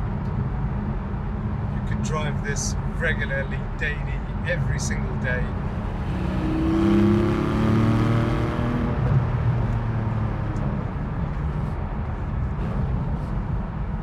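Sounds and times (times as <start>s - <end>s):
car engine accelerating: 5.3s - 13.6s.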